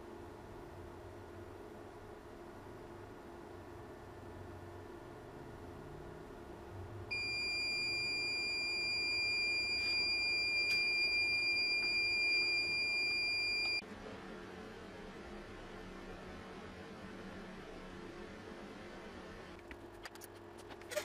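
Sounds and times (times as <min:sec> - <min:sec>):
inverter alarm buzzer tone: 0:07.1 - 0:13.8.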